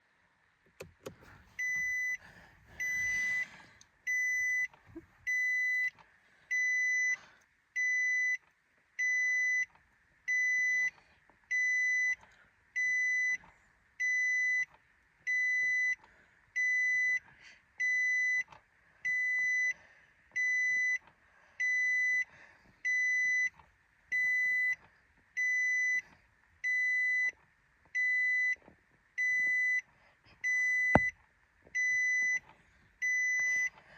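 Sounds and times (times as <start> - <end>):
car warning chime beeping: 0.8 - 3.5, 4.1 - 7.2, 9.0 - 12.2, 14.0 - 14.7, 15.3 - 16.0, 16.6 - 17.2, 17.8 - 19.8, 20.4 - 22.3, 22.9 - 24.8, 26.6 - 27.4, 28.0 - 28.6, 29.2 - 31.2, 31.8 - 32.4, 33.0 - 33.7.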